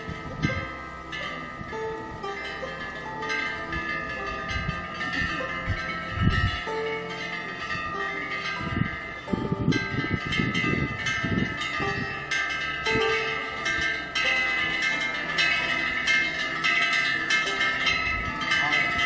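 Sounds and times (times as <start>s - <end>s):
wind rumble on microphone: 0.0s - 2.3s, 3.3s - 14.8s, 17.6s - 19.0s
wind bells ringing: 0.0s - 19.0s.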